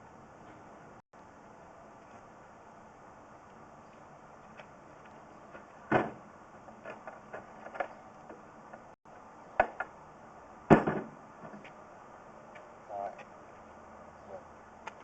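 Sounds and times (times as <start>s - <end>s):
equipment knocks and clunks: 5.9s - 6.2s, 10.7s - 11.7s.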